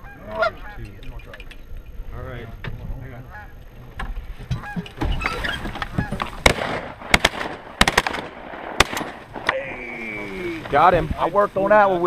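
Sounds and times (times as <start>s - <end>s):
geese honking: 0.0s - 1.2s, 3.1s - 3.9s, 4.5s - 6.7s
shotgun shots: 6.4s - 9.7s.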